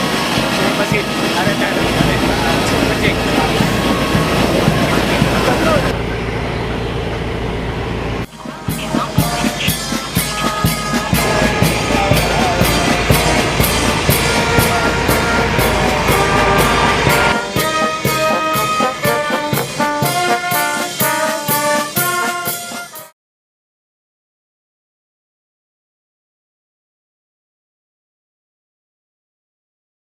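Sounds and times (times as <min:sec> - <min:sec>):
brass music with drums: 0:00.0 - 0:06.0, 0:08.2 - 0:23.2.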